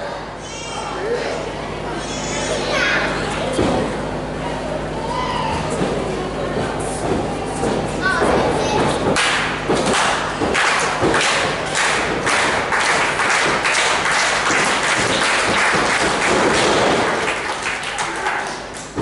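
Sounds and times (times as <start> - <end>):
crowd noise: 0.0 - 19.0
heavy thuds: 5.5 - 17.3.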